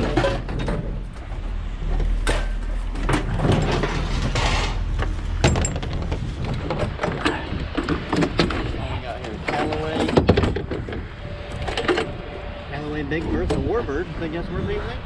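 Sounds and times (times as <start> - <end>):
junk items clattering and knocking: 0.0 - 13.7
rattling rustling noise: 0.0 - 13.8.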